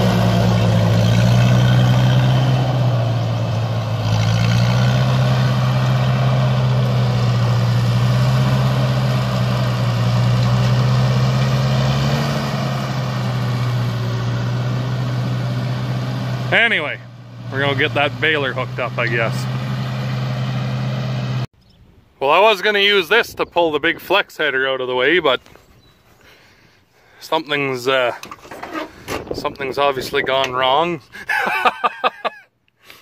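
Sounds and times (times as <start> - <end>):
vehicle engine running: 0.0 - 21.5.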